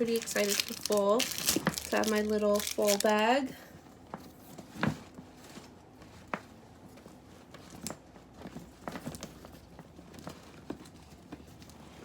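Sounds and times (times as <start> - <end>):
packaging rustling: 0.0 - 3.4.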